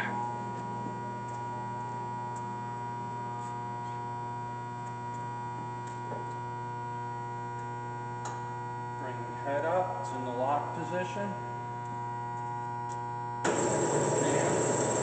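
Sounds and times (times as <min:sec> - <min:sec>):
band saw motor humming: 0:13.4 - 0:15.0.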